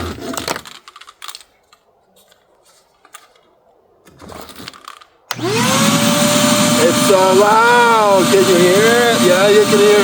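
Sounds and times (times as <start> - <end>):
faint handling clicks and rustle: 0.0 - 5.3
vacuum cleaner motor whine: 5.3 - 10.0.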